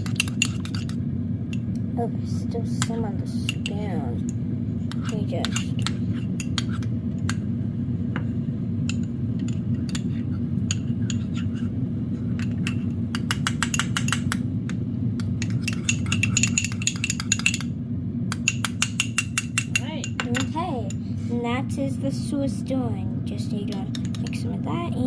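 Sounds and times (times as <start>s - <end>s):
teaspoon clinking against bowl: 0.0s - 1.7s, 12.4s - 14.4s, 15.2s - 17.7s, 18.3s - 21.0s
steady low hum: 0.0s - 25.0s.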